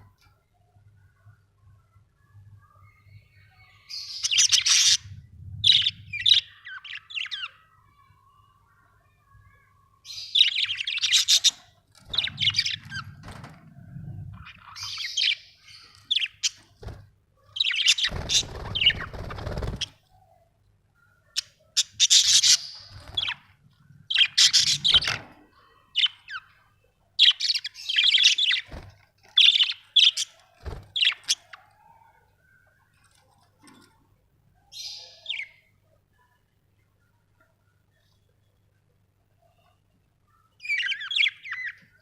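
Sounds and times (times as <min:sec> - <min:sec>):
budgerigars chirping: 0:04.0 - 0:07.5, 0:10.2 - 0:13.1, 0:17.6 - 0:20.0, 0:21.3 - 0:23.5, 0:24.1 - 0:25.1, 0:27.2 - 0:28.7, 0:40.6 - 0:41.8.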